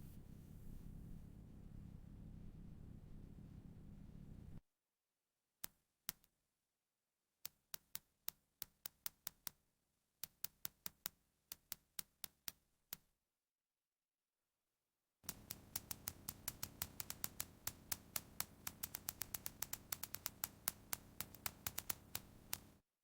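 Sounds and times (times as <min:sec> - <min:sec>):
low steady hum: 0:00.0 - 0:04.6
sharp mechanical clicks: 0:15.3 - 0:22.8.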